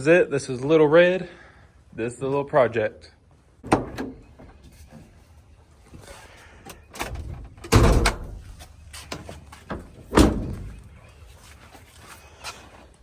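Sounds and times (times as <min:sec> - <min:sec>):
loud metal clunks: 0:03.6 - 0:04.2, 0:07.0 - 0:08.6, 0:09.7 - 0:10.8.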